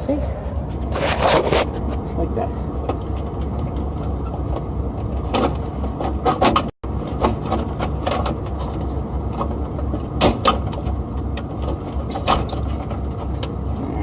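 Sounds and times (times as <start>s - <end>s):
steady low rumble: 0.0s - 14.0s
clicks and scrapes of wire terminals: 0.3s - 2.0s.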